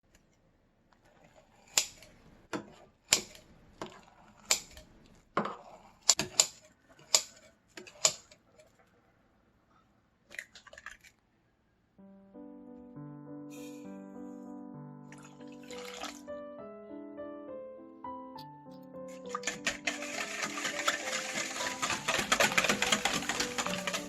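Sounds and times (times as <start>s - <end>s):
background music: 12.0s - 24.0s.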